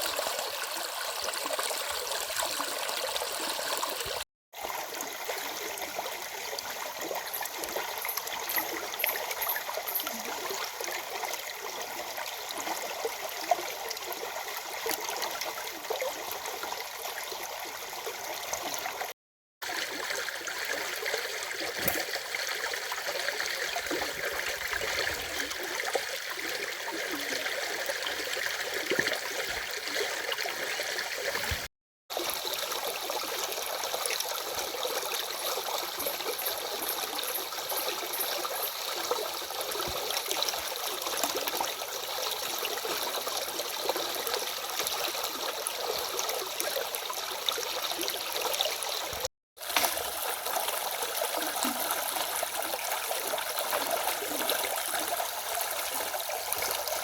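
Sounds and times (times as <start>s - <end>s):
stream water rushing: 47.2s - 57.0s.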